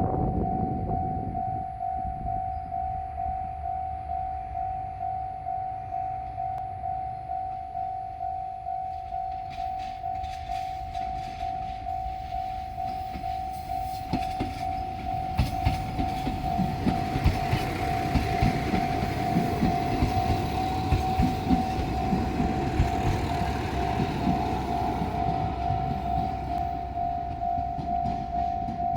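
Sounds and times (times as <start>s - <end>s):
diesel train rumble: 0.0s - 28.9s
level-crossing bell ringing: 0.3s - 28.9s
wheels clattering over rail joints: 9.0s - 28.9s.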